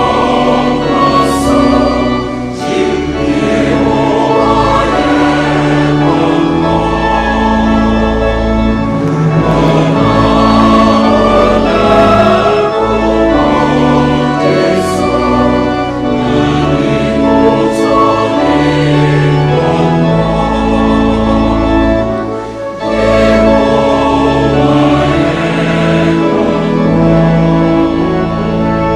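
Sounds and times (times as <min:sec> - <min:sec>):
choir singing gospel music: 0:00.0 - 0:28.9
strong bass line: 0:04.6 - 0:13.8.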